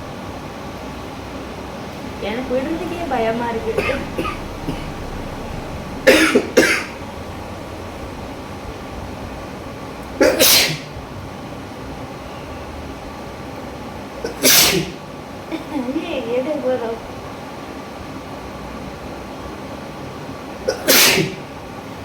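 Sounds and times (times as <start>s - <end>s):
person sneezing: 10.2s - 10.9s, 14.3s - 15.0s, 20.7s - 21.4s.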